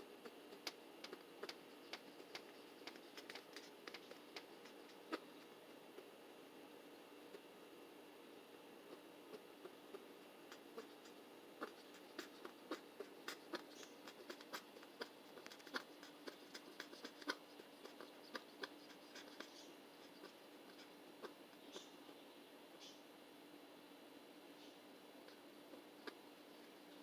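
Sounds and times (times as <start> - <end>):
faint clicks and scratchy ticks: 0.5 - 6.1, 8.9 - 22.2.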